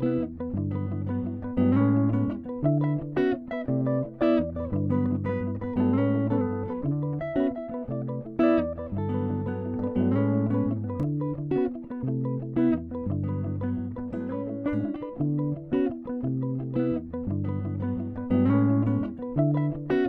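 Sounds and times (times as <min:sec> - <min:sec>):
guitar-led instrumental music: 0:00.0 - 0:20.0.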